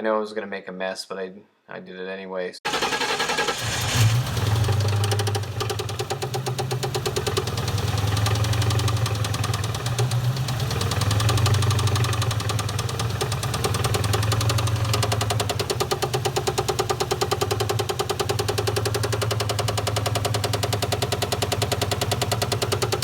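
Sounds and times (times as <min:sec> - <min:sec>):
car engine idling: 0:02.7 - 0:23.0
rapid engine knocking: 0:02.7 - 0:23.0.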